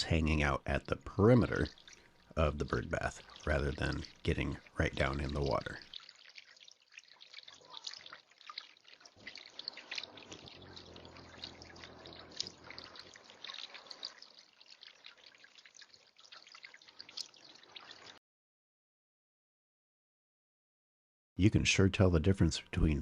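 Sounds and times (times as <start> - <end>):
water dripping and trickling: 0.0 - 18.2.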